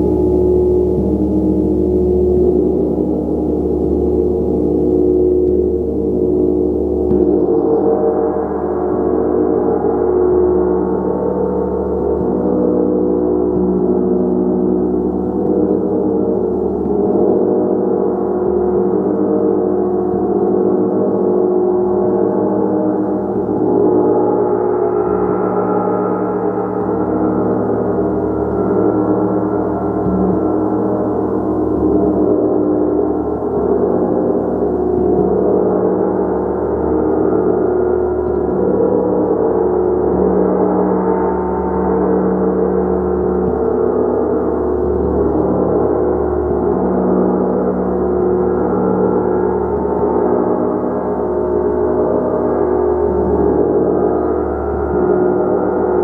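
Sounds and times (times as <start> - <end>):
gong sustained wash: 0.0 - 56.0.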